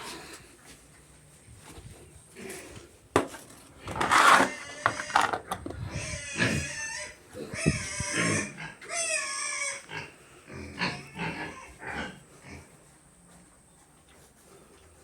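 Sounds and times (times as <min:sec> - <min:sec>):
pigs squealing and grunting: 0:04.0 - 0:12.7.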